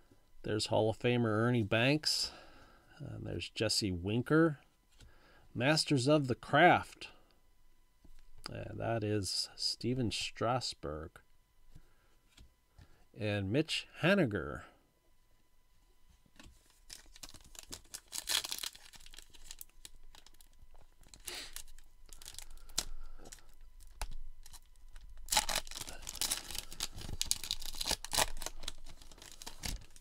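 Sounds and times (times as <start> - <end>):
plastic foil wrapper tearing and crinkling: 16.7 - 30.0.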